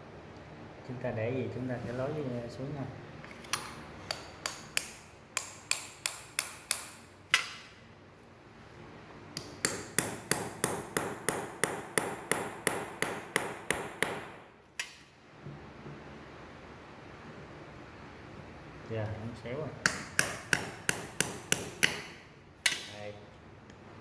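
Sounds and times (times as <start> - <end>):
hammer tapping metal: 4.1 - 7.6, 9.4 - 15.0, 19.8 - 22.9.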